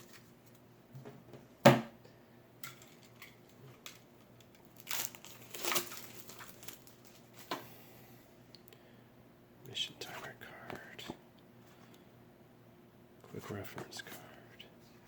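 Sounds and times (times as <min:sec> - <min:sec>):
packaging rustling: 0:02.8 - 0:07.6.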